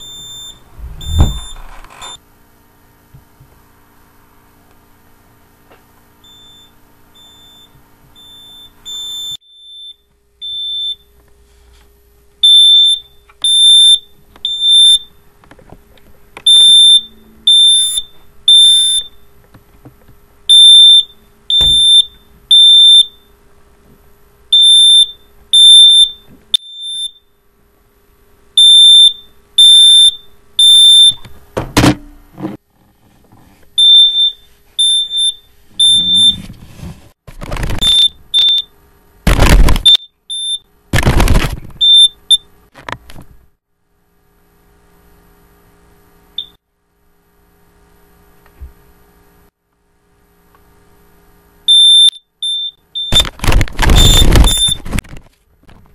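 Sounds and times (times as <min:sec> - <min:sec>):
smoke alarm beeping: 0:00.0 - 0:01.6, 0:06.2 - 0:11.1, 0:12.4 - 0:15.2, 0:16.4 - 0:19.3, 0:20.5 - 0:23.3, 0:24.5 - 0:27.3, 0:28.6 - 0:31.2, 0:33.8 - 0:36.4, 0:37.8 - 0:38.7, 0:39.8 - 0:40.7, 0:41.8 - 0:42.5, 0:46.4 - 0:46.6, 0:51.7 - 0:53.3, 0:54.0 - 0:54.8
loud thuds: 0:00.7 - 0:01.9, 0:39.3 - 0:39.9.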